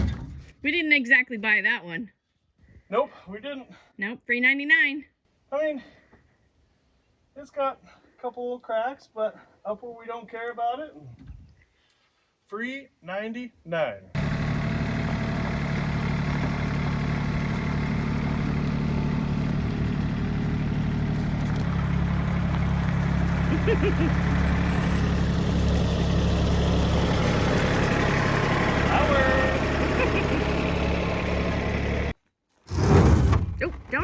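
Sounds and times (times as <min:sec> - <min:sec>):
tractor engine running: 0:14.2 - 0:32.9.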